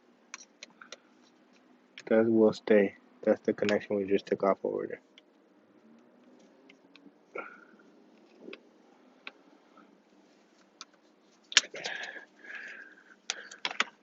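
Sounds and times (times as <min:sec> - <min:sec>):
plastic connectors clicking and rattling: 0:13.3 - 0:14.0.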